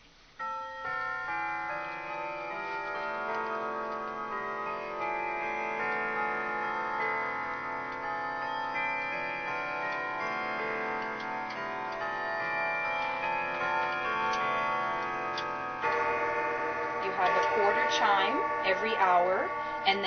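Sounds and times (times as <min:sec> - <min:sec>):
clock chime melody: 0:00.4 - 0:20.0.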